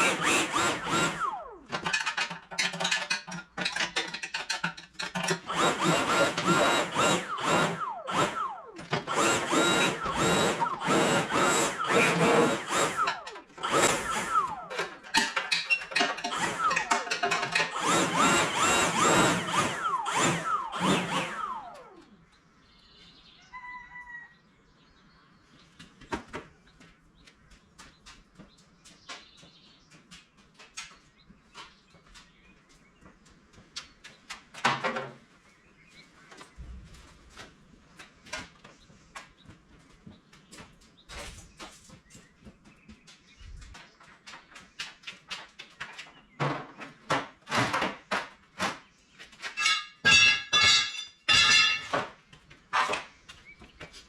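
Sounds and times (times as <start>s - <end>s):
small power tool running in bursts: 0.0s - 1.8s, 5.3s - 15.0s, 16.2s - 22.2s.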